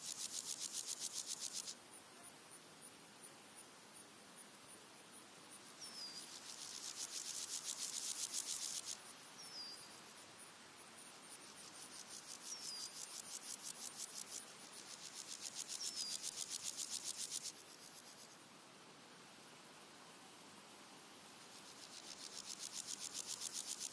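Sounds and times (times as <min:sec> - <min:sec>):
grasshoppers stridulating: 0:00.0 - 0:01.8, 0:05.6 - 0:10.4, 0:11.0 - 0:18.4, 0:21.3 - 0:23.9
faint high ticking insect: 0:00.0 - 0:23.9.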